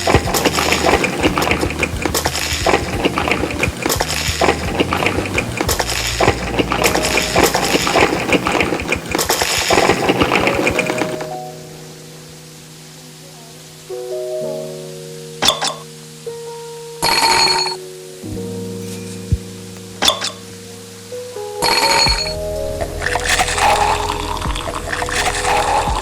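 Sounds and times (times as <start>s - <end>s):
background music: 0.0s - 26.0s
tableware clinking: 17.0s - 17.8s.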